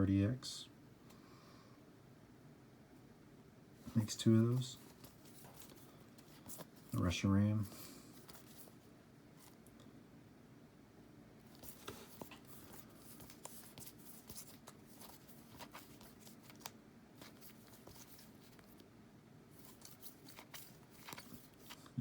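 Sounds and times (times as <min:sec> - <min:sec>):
trading cards being flipped: 0:04.8 - 0:07.0, 0:08.2 - 0:08.8, 0:11.5 - 0:18.9, 0:19.6 - 0:21.9.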